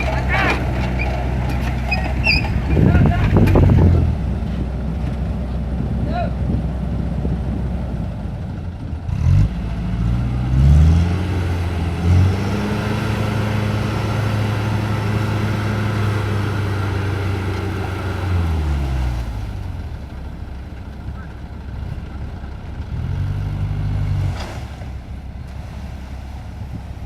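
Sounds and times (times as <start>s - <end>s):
vehicle engine revving: 8.9s - 20.0s, 21.1s - 26.9s.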